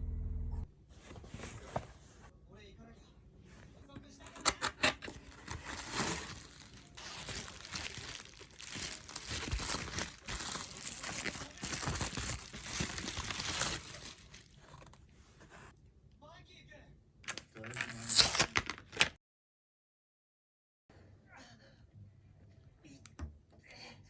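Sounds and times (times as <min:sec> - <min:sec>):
wrapping crinkling and rustling: 0:00.9 - 0:02.3, 0:04.2 - 0:15.7, 0:17.3 - 0:19.2.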